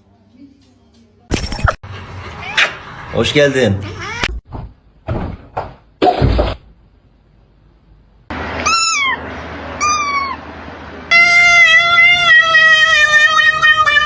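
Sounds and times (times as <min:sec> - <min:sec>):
cat meowing: 0:02.3 - 0:02.8, 0:03.8 - 0:04.4, 0:08.6 - 0:09.2, 0:09.8 - 0:10.4, 0:11.1 - 0:14.0
steady high-pitched call: 0:11.1 - 0:14.0.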